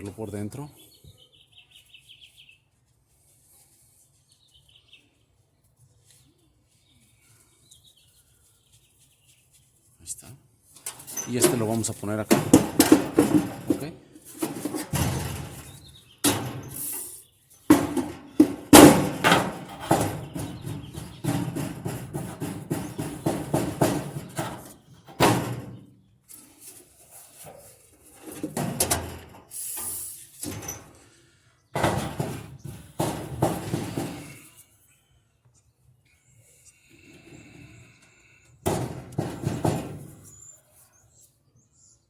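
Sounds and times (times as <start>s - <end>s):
metal parts knocking and scraping: 10.8s - 31.1s, 31.7s - 34.6s, 38.6s - 40.4s.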